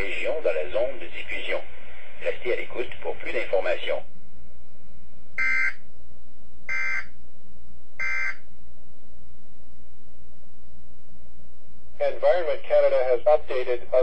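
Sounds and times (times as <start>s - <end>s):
steady low hum: 0.0s - 14.0s
electronic alert beeps: 5.4s - 5.8s, 6.7s - 7.1s, 8.0s - 8.4s.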